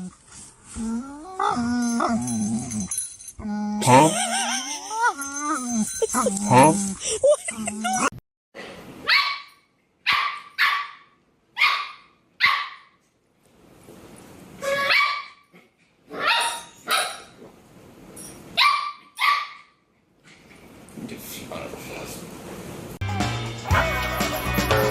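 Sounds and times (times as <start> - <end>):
dog barking: 9.0 - 13.0, 14.7 - 15.4, 16.2 - 17.4, 18.6 - 19.7.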